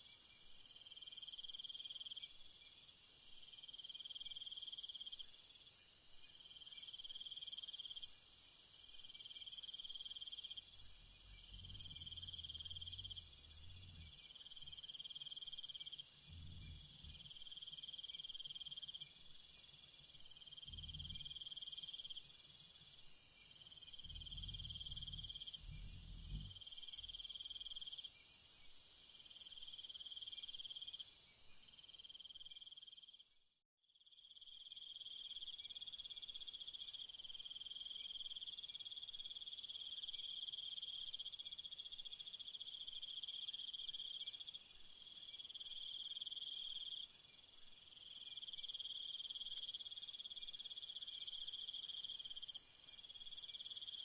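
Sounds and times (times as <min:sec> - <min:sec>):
crickets trilling: 0:06.4 - 0:33.0.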